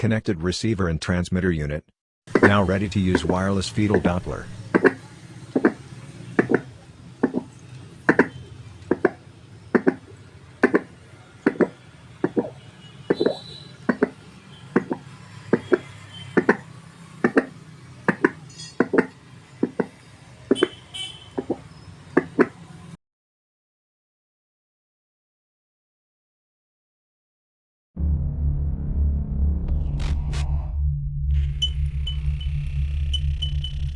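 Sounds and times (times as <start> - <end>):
steady low hum: 31.4 - 33.9.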